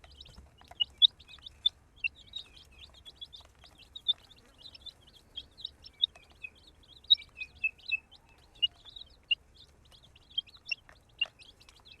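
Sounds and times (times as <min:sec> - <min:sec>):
baby chicks peeping: 0:00.0 - 0:12.0.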